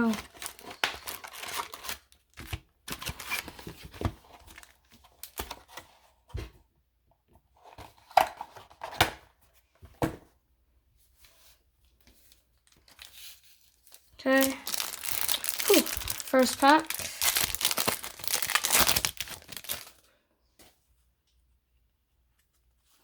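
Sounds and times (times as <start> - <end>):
packaging tearing and rustling: 0.0 - 5.7, 12.6 - 20.0.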